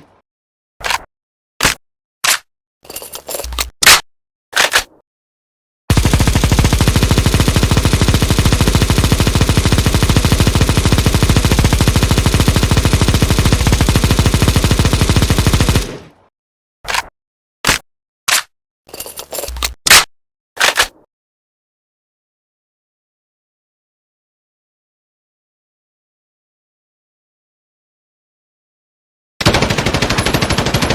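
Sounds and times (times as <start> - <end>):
machine gun automatic fire: 5.9 - 16.2, 29.4 - 30.9.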